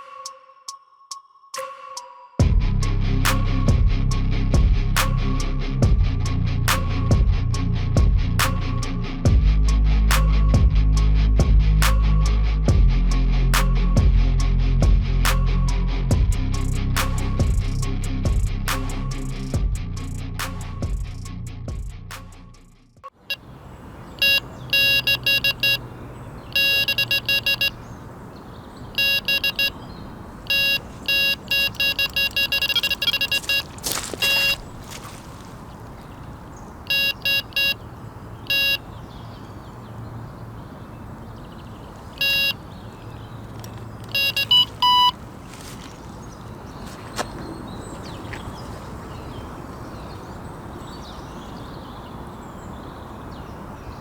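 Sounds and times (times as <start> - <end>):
electronic bite alarm beeping: 24.2 - 27.9, 28.9 - 34.6, 36.9 - 37.8, 38.4 - 38.9, 42.2 - 42.6, 44.1 - 45.2.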